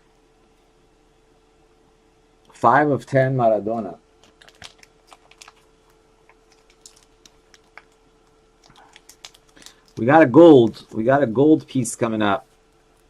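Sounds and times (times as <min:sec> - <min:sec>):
faint hum: 0:00.0 - 0:13.0
trading cards being handled: 0:04.2 - 0:11.1.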